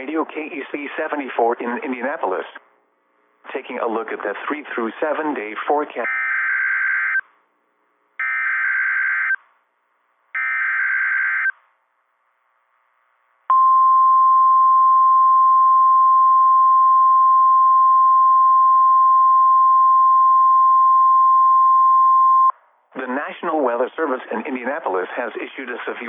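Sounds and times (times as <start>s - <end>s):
steady alarm tone: 8.2s - 9.4s, 10.4s - 11.5s
warbling data chirps: 10.4s - 11.5s.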